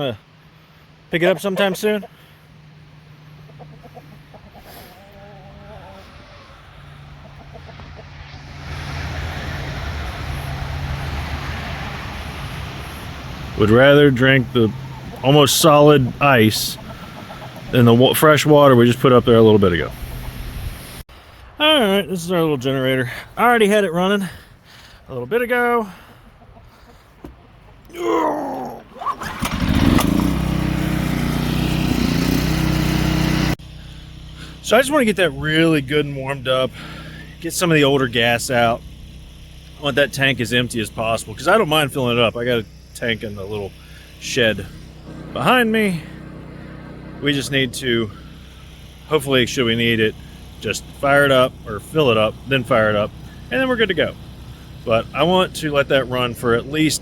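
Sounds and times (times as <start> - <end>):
generator engine humming: 0.0 - 21.0, 21.6 - 57.0
hens clucking: 1.1 - 8.4, 13.4 - 20.5, 25.6 - 30.2
recoil starter whirring: 28.9 - 57.0.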